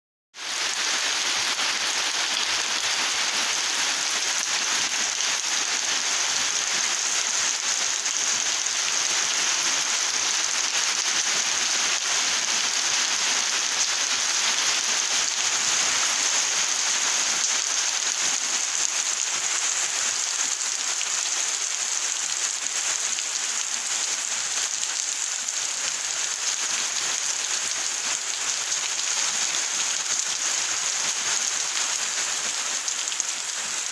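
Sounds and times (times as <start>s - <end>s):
steady rain falling: 0.4s - 33.9s.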